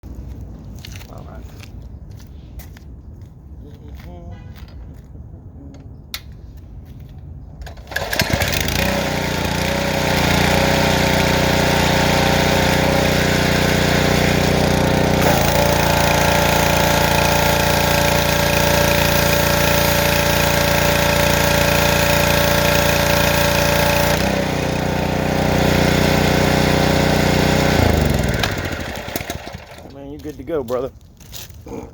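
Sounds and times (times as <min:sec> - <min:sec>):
engine starting and running: 0:07.6 - 0:30.0.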